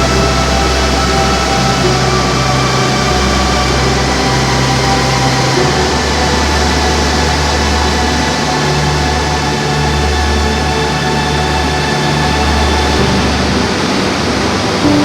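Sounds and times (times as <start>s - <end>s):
rushing waterfall and rapids: 0.0s - 15.0s
soft background music: 0.0s - 15.0s.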